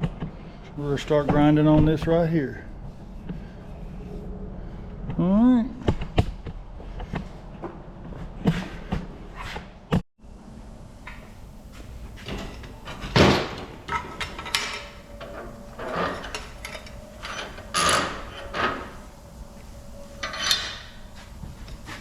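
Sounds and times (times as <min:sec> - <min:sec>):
metal tools knocking and clanking: 0:12.2 - 0:19.1, 0:20.1 - 0:21.8.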